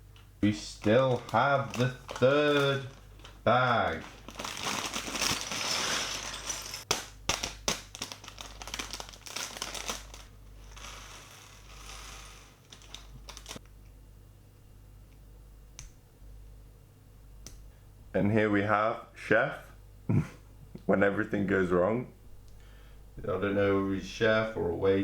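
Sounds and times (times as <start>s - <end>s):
plastic pieces clicking: 0.2s - 10.9s, 11.8s - 13.6s
plastic bag crinkling: 0.4s - 13.6s.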